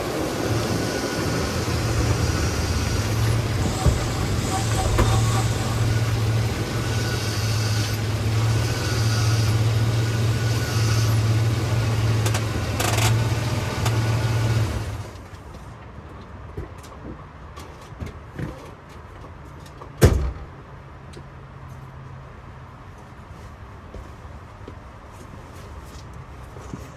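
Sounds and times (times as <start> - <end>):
vehicle engine running: 0.0 - 15.2.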